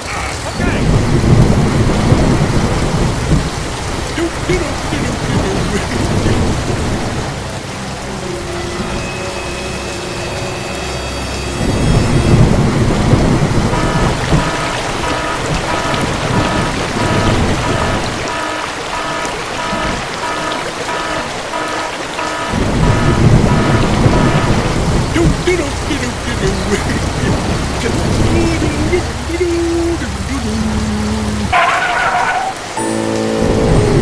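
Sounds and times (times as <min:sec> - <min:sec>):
steady rain: 0:00.0 - 0:34.0
thunder rumbling: 0:12.4 - 0:25.6.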